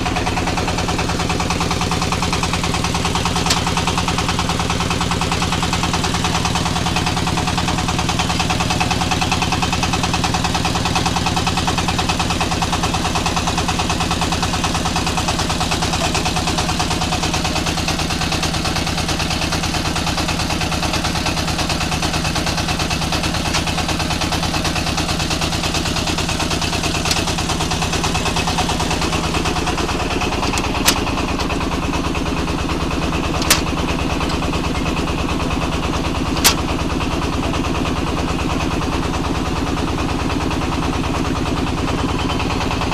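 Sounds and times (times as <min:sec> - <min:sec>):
brick machine running with pulse: 0:00.0 - 0:42.9
sharp clicks: 0:33.4 - 0:34.5, 0:36.4 - 0:36.7.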